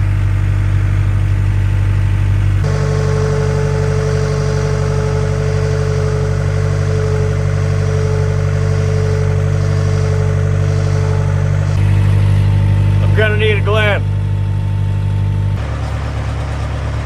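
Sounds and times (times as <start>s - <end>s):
skid steer engine running: 0.0s - 17.0s
steady whine: 1.1s - 15.6s.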